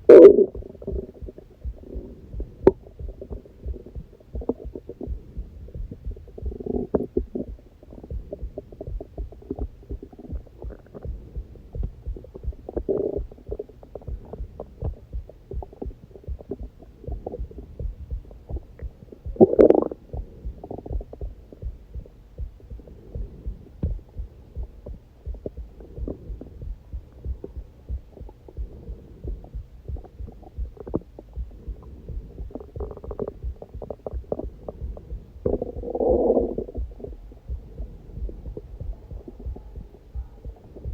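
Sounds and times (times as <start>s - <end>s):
stomach growling: 0.0s - 15.0s, 18.5s - 21.7s, 28.3s - 40.9s
heartbeat thudding: 0.0s - 40.9s.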